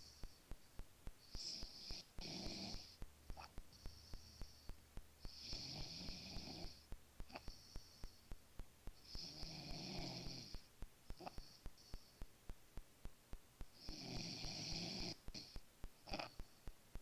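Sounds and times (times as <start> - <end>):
breathy hiss: 0.0 - 12.3
man snoring: 1.4 - 2.9, 5.3 - 6.8, 9.1 - 10.6, 13.8 - 16.3.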